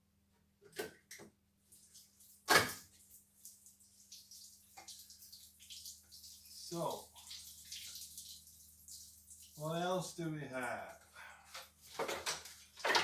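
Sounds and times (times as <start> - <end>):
coolant trickling out: 1.8 - 10.9.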